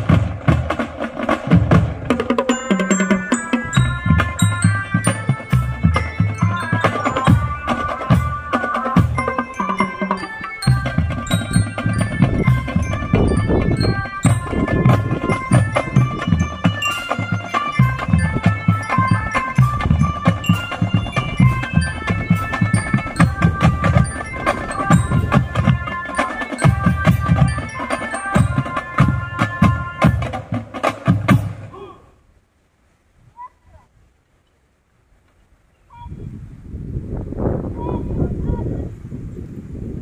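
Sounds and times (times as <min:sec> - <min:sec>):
marching drum beats: 0:00.0 - 0:31.8
mallet bells melody: 0:01.5 - 0:31.6.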